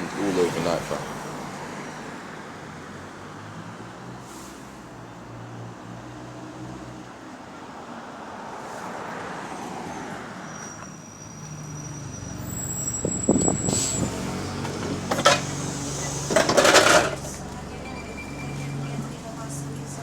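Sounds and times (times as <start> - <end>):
bus engine with exhaust leak: 4.0 - 7.4, 9.8 - 20.0.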